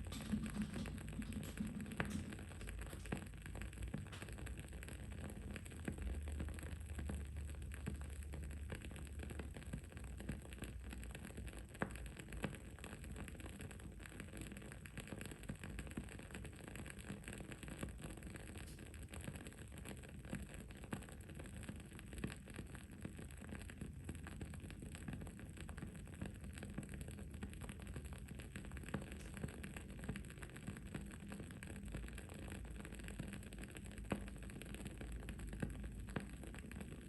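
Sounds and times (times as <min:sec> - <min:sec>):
candle wick crackling: 0:00.0 - 0:07.2.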